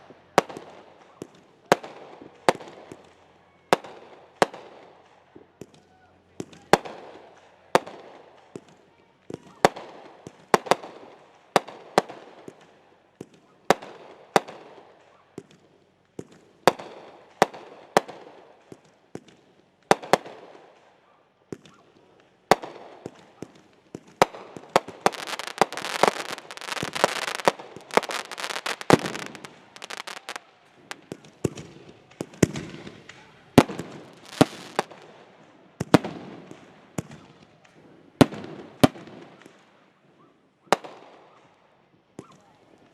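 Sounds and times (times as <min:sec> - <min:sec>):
dense firework crackling: 0:21.6 - 0:39.7
firework bangs with echo: 0:22.5 - 0:39.6.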